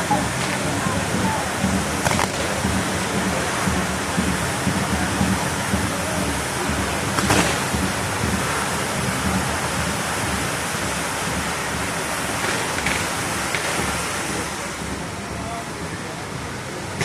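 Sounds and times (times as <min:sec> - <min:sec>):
fireworks hissing: 0:00.0 - 0:17.0
sharp crack: 0:01.9 - 0:03.6, 0:07.1 - 0:08.6, 0:12.3 - 0:14.5.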